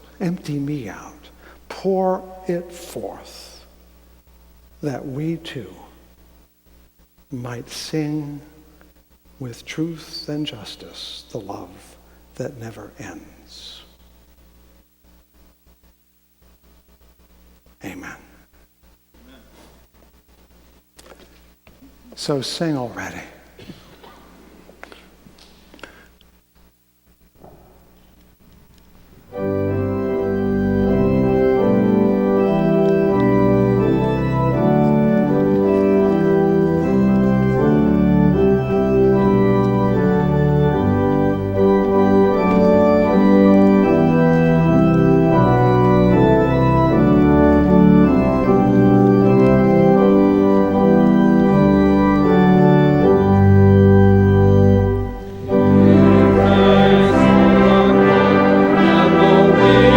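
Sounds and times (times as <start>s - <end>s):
church organ playing a hymn: 0.0s - 3.6s, 29.3s - 59.9s.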